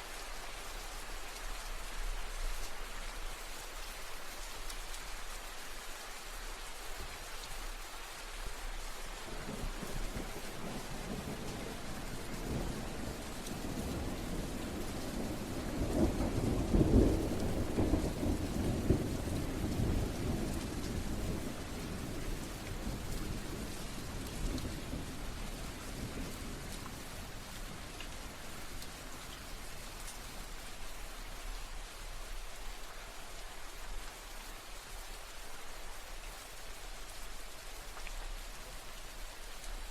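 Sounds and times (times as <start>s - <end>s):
steady rain falling: 0.0s - 39.9s
low roll of thunder: 9.3s - 29.7s.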